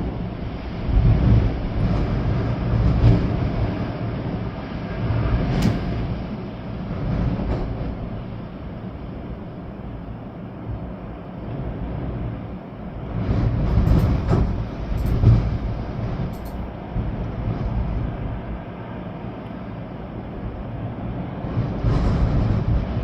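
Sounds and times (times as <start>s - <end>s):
storm wind gusting: 0.0s - 23.0s
short sharp ticks: 16.4s - 16.6s.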